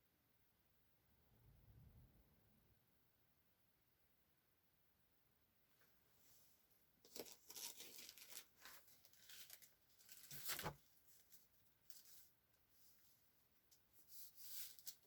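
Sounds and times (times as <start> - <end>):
paper rustling: 7.1 - 12.3, 14.0 - 15.0.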